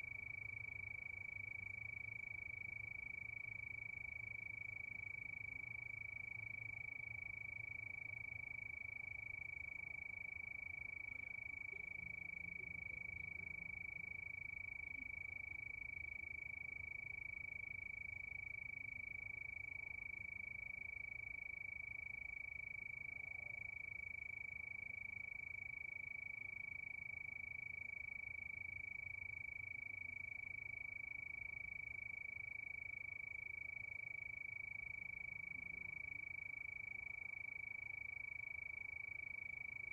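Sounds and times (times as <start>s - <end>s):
crickets trilling: 0.1s - 39.9s
faint low rumble: 10.7s - 18.0s.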